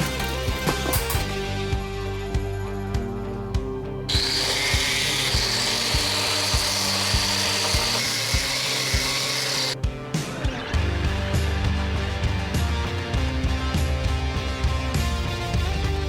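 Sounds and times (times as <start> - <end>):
power tool whining: 4.1 - 9.8.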